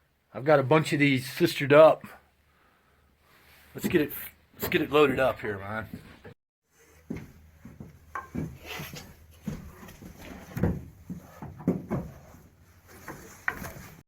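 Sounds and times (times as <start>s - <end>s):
wooden slabs knocking: 7.7s - 8.6s, 10.0s - 12.3s.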